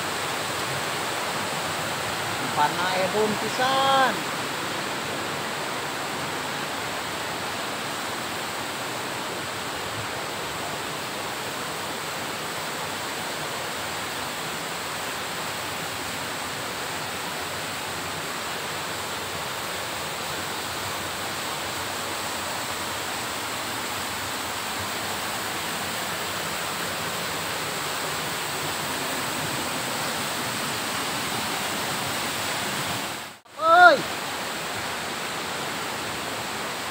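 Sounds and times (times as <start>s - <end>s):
waterfall splashing into pool: 17.3s - 36.9s.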